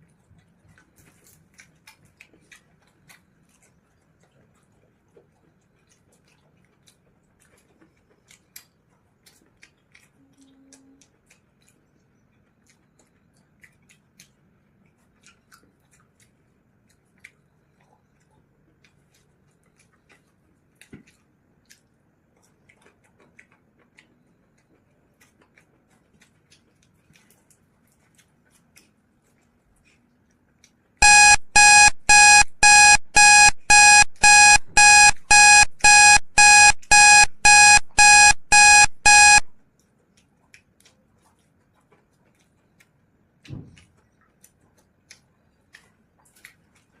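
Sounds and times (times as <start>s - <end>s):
faint eating clicks: 0.0s - 47.0s
timer alarm beeping: 31.0s - 39.6s.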